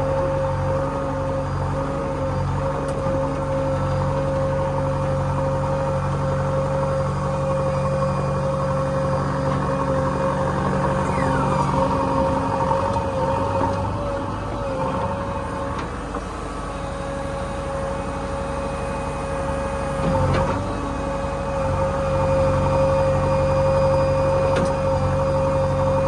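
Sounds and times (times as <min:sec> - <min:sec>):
diesel engine running: 0:00.0 - 0:26.0
high whine: 0:06.9 - 0:13.4
short falling squeal: 0:10.7 - 0:12.4.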